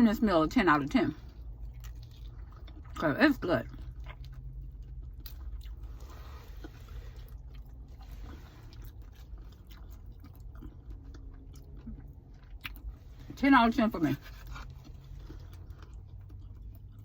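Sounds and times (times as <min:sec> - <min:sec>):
steady low hum: 0:00.0 - 0:17.0
person chewing and crunching food: 0:00.8 - 0:17.0.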